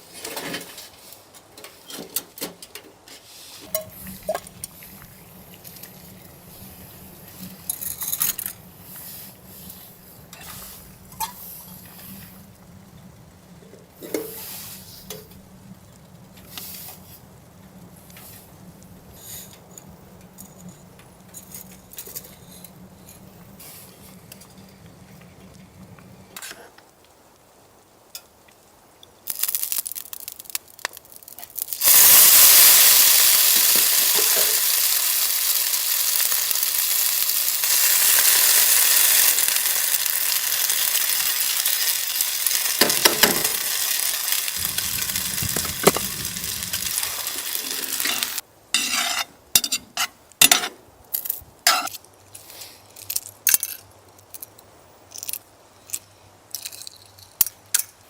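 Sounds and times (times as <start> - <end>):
food sizzling in a pan: 3.4 - 12.6, 14.0 - 15.4, 29.2 - 49.3.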